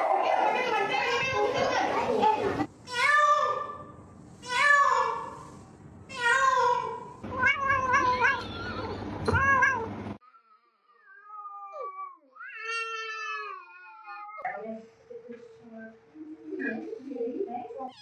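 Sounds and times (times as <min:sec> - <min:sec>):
cat meowing: 0:07.3 - 0:09.9.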